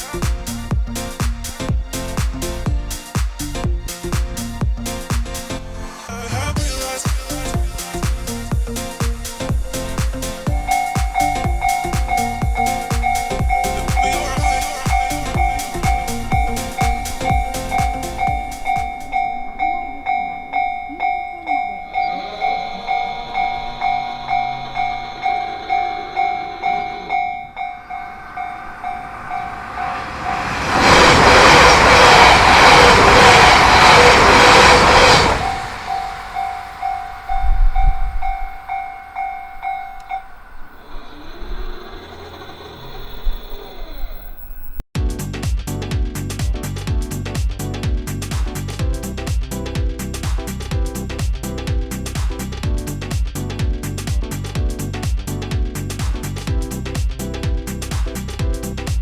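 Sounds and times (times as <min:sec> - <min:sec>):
train passing: 0:00.0 - 0:05.5, 0:06.6 - 0:44.8
level-crossing alarm bell clanging: 0:10.5 - 0:30.7, 0:35.4 - 0:44.8.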